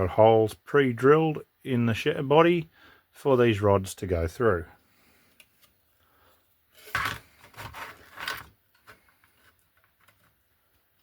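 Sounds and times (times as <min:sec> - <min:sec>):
plastic parts scraping and knocking: 0:06.8 - 0:10.4.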